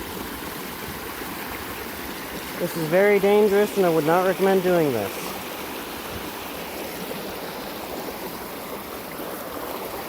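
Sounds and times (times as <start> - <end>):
creek water rushing: 0.0 - 10.0.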